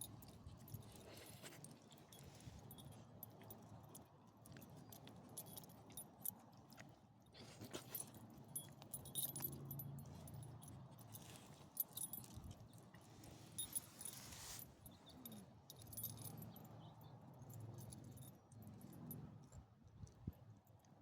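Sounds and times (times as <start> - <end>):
faint metallic jingling: 0.0 - 4.0, 7.4 - 19.2.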